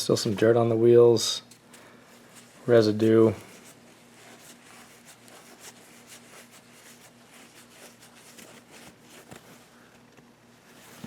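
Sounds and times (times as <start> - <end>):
faint steady hum: 0.0 - 11.0
scratchy rubbing: 2.2 - 9.7.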